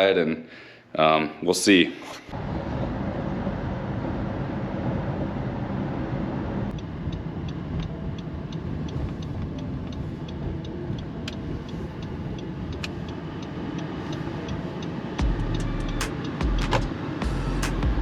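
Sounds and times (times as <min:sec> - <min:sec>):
vehicle engine rumble: 0:02.3 - 0:18.0
light regular ticking: 0:06.7 - 0:17.0.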